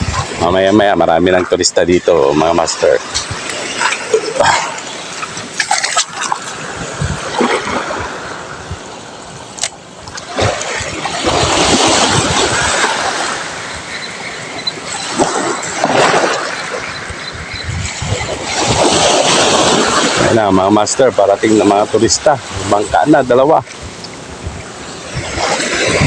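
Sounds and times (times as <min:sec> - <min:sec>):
waves splashing against shore: 0:00.0 - 0:26.0.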